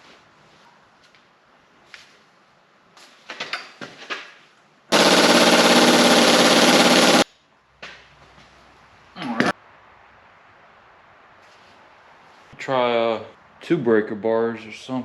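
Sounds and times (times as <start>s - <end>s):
impact wrench hammering: 4.9s - 7.2s.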